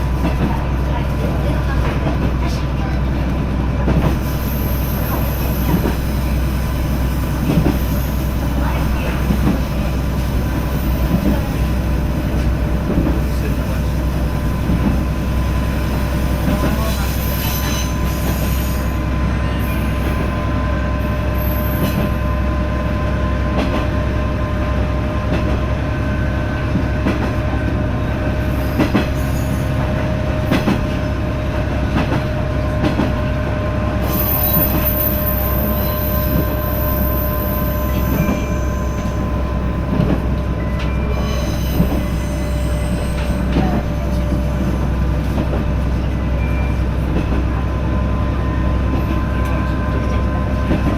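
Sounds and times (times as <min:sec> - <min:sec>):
rail clicks: 0:00.0 - 0:20.7, 0:23.5 - 0:24.0, 0:26.6 - 0:50.9
train low rumble: 0:00.0 - 0:50.9
high wheel squeal: 0:34.0 - 0:39.4, 0:41.1 - 0:43.6.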